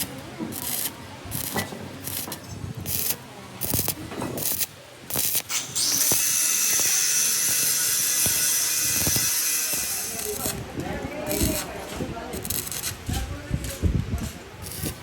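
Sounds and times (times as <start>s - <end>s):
hissing bursts: 0.0s - 10.7s, 14.6s - 15.0s.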